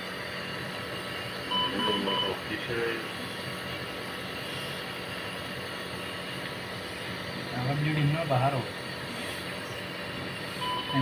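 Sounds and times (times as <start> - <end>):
short electronic beeps: 1.5 - 2.4, 10.6 - 11.0.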